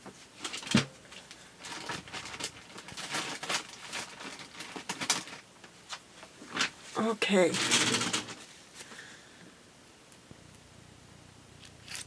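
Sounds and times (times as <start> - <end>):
paper rustling: 0.4 - 8.6.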